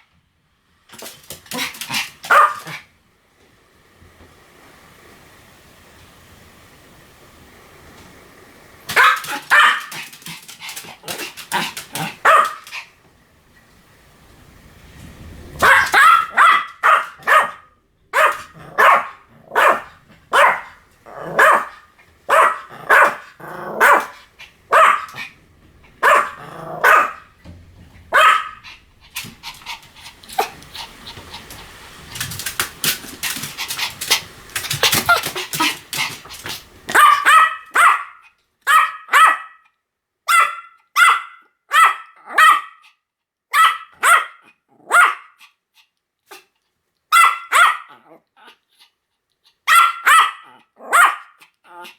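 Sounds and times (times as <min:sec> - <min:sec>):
small dog barking: 0:01.0 - 0:02.9, 0:08.9 - 0:12.9, 0:15.6 - 0:27.4, 0:28.1 - 0:31.0, 0:32.2 - 0:39.7, 0:40.3 - 0:42.8, 0:43.5 - 0:45.4, 0:47.1 - 0:48.2, 0:49.6 - 0:51.8.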